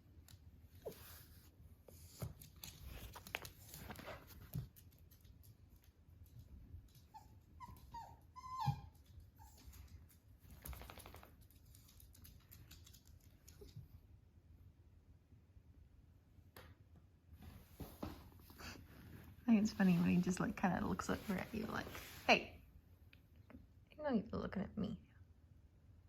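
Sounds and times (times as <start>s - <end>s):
soft rustling: 0.4s - 5.5s, 17.4s - 22.6s
puppy whimpering: 7.1s - 9.7s.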